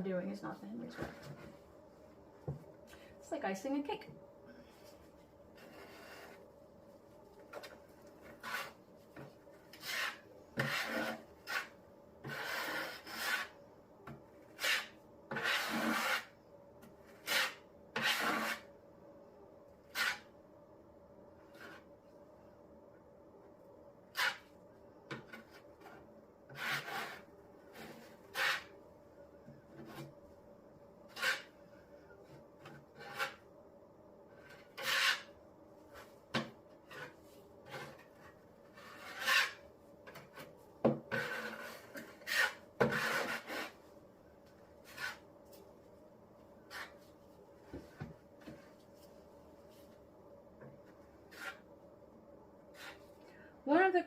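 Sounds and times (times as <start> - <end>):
cement scraped across tabletop: 9.7 - 13.6, 14.6 - 16.3, 17.2 - 18.7, 38.8 - 39.6, 41.1 - 43.8.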